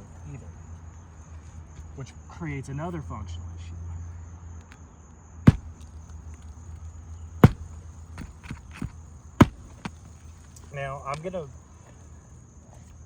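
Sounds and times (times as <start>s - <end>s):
hammer striking roof: 5.5s - 5.8s, 7.4s - 10.0s.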